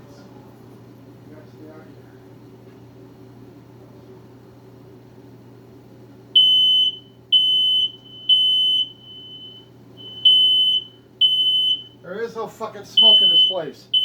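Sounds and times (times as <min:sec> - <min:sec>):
smoke alarm beeping: 0:06.4 - 0:12.0, 0:13.0 - 0:14.0.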